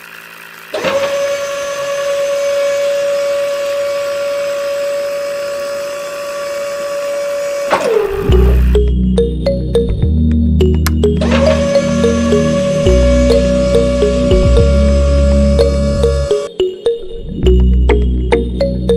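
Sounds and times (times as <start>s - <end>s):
small electric motor whining: 0.0s - 8.8s, 11.2s - 16.5s.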